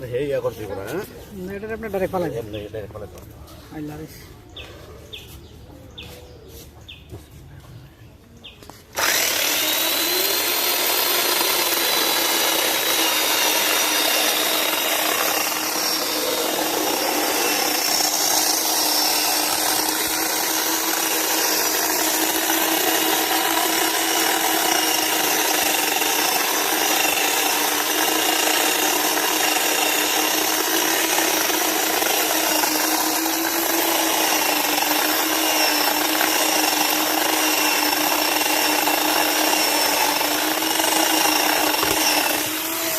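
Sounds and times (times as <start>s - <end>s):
chainsaw cutting wood: 8.9s - 42.9s.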